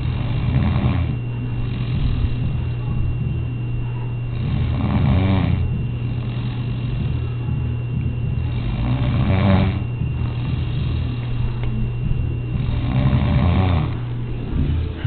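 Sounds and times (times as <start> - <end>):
woman snoring loudly: 0.0 - 2.6, 4.3 - 7.2, 8.5 - 11.5, 12.6 - 15.0
steady low hum: 0.0 - 15.0.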